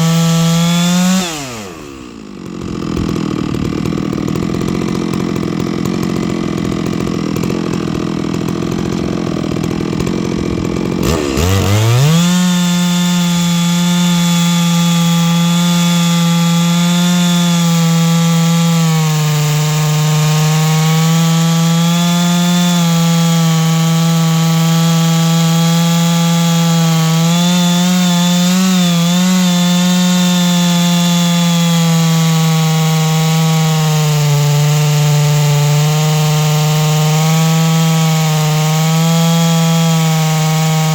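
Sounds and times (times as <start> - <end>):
chainsaw mill cutting log: 0.0 - 40.9.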